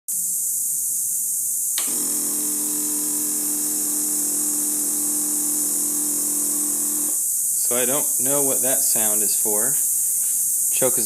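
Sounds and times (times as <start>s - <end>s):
cicadas buzzing: 0.1s - 11.0s
steady electric whir: 1.7s - 8.1s.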